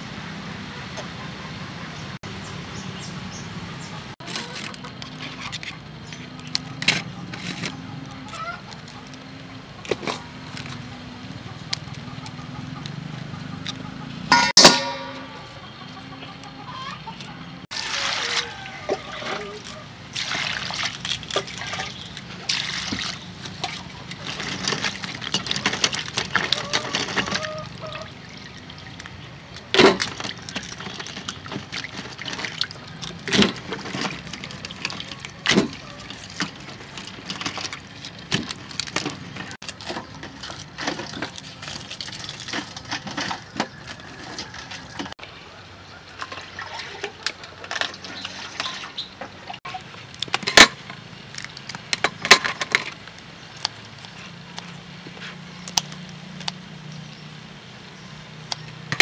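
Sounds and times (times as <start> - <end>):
water splashing and trickling: 17.3 - 59.0.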